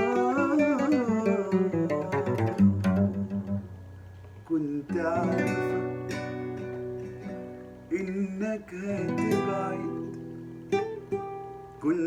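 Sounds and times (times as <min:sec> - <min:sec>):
plucked string instrument melody: 0:00.0 - 0:03.8.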